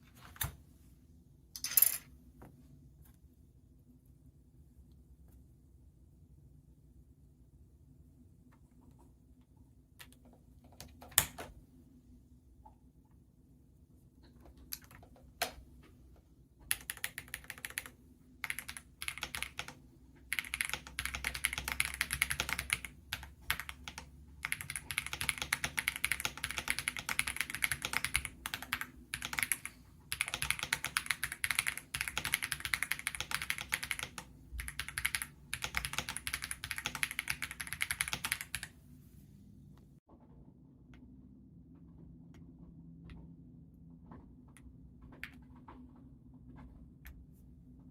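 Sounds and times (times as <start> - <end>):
mechanical keyboard typing: 16.6 - 38.7.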